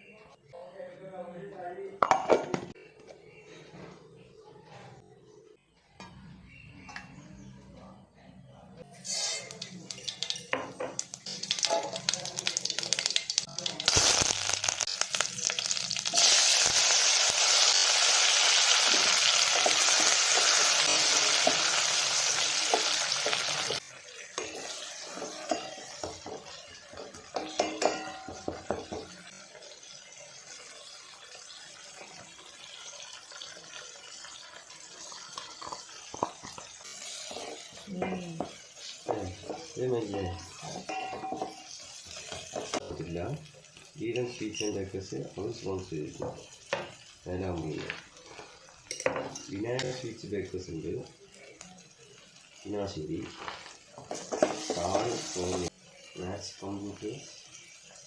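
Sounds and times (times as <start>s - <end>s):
food sizzling in hot oil: 8.9s - 58.0s
utensil stirring and clinking: 9.0s - 14.0s, 14.8s - 29.2s, 34.6s - 50.3s, 51.0s - 58.0s.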